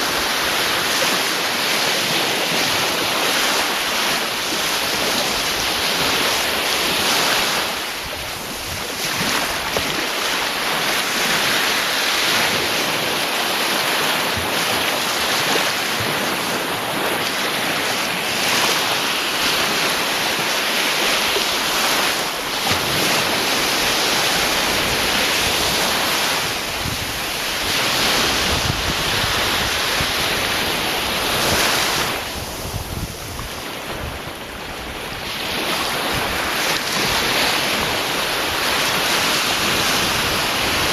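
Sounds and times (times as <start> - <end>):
waves breaking: 0.0 - 40.9.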